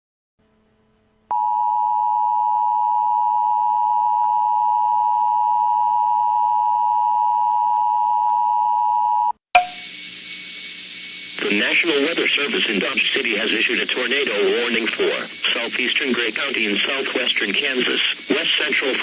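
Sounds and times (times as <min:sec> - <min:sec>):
static hiss: 0:09.7 - 0:19.0.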